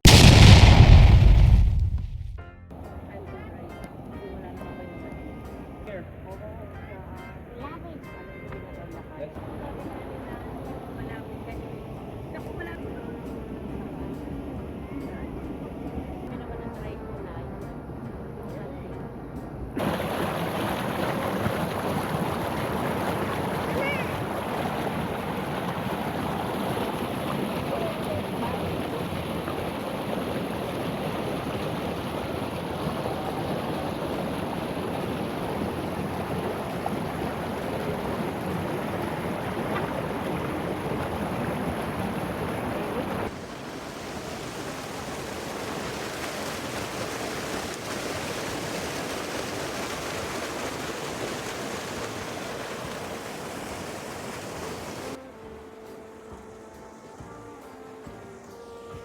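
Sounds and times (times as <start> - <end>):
waterfall and creek rushing: 19.8 - 59.0.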